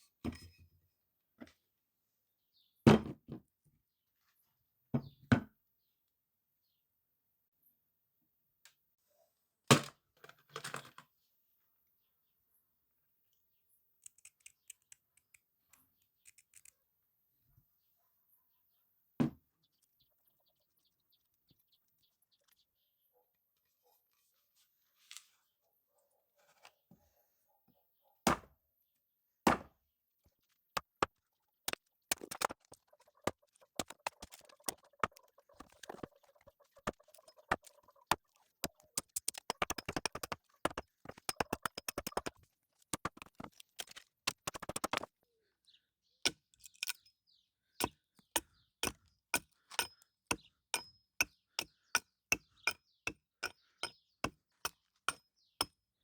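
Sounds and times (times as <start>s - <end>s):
hand tool striking: 38.7s - 43.6s, 44.3s - 45.1s, 46.3s - 47.1s, 47.8s - 55.8s.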